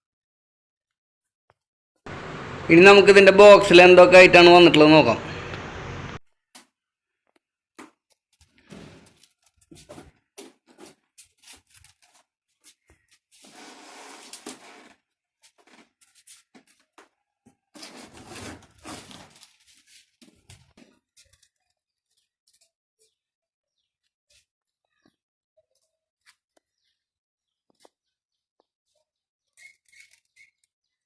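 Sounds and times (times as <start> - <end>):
packaging rustling and tearing: 17.8 - 20.4.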